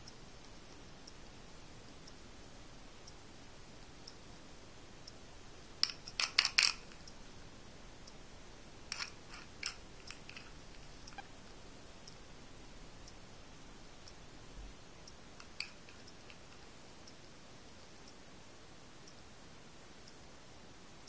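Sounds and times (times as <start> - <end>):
padlock clicking and rattling: 5.8 - 7.0, 8.9 - 11.2.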